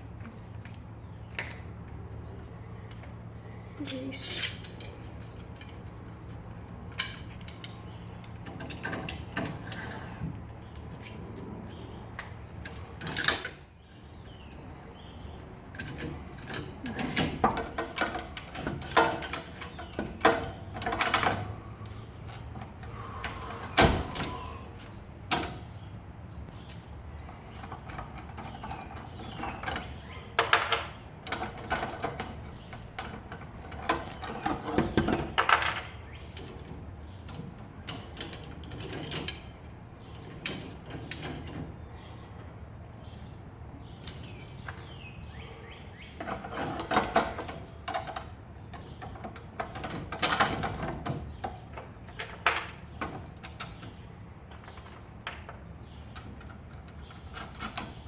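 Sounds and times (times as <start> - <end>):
clicks clanks and scrapes of parts: 6.9 - 11.5, 15.7 - 25.7, 26.6 - 41.8, 46.2 - 58.0.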